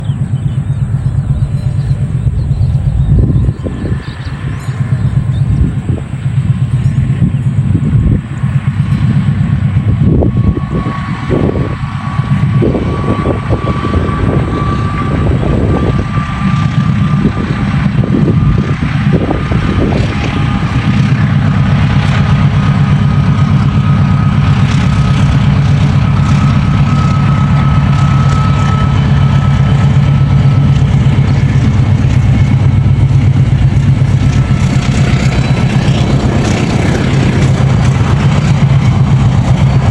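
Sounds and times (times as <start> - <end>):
thin rising whine: 0.0 - 17.4
locomotive engine drone: 0.0 - 39.9.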